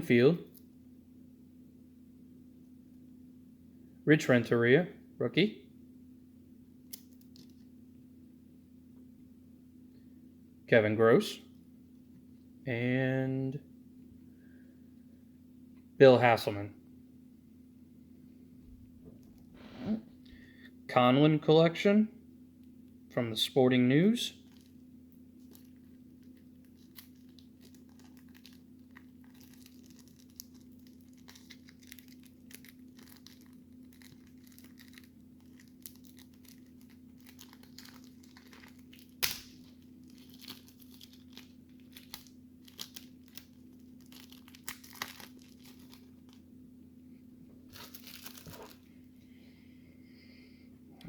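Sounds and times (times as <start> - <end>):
wrapper crackling: 6.9 - 7.6, 24.4 - 24.8, 25.4 - 46.4, 47.7 - 48.9
card pack wrapper tearing: 25.4 - 46.4, 47.7 - 48.9.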